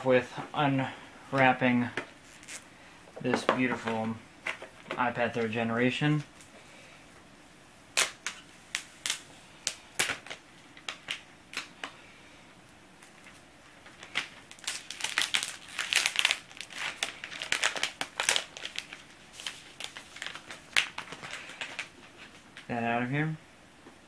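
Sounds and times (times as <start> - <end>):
plastic wrapping crinkling: 1.4 - 2.7, 8.0 - 12.0, 13.0 - 22.8.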